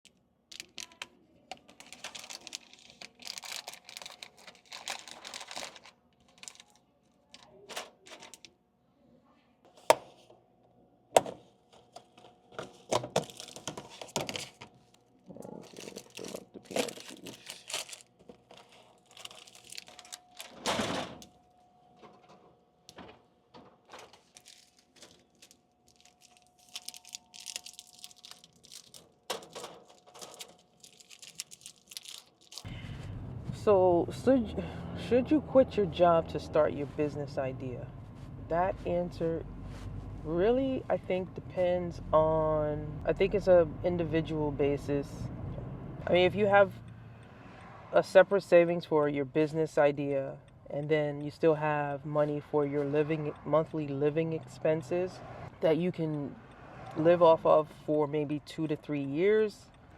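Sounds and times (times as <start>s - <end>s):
plastic snack packets crinkling: 0.5s - 8.5s, 12.7s - 20.7s, 23.9s - 32.7s.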